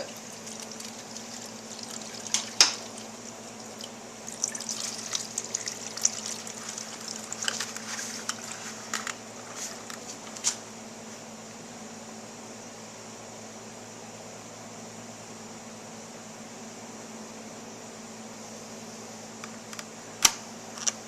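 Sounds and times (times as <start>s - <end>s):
coolant trickling into drain pan: 0.0s - 9.1s.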